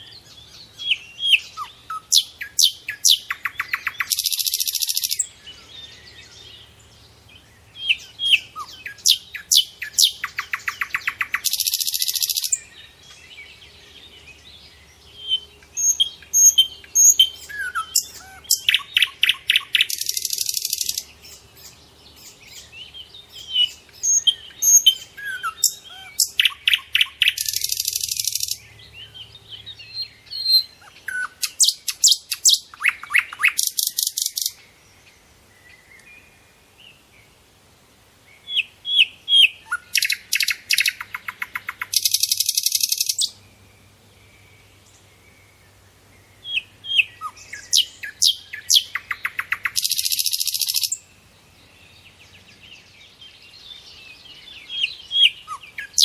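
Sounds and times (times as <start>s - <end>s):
soft bird twitters: 0.0s - 28.8s, 38.4s - 43.4s, 46.2s - 51.1s
songbird singing buzzy trill: 0.0s - 56.0s.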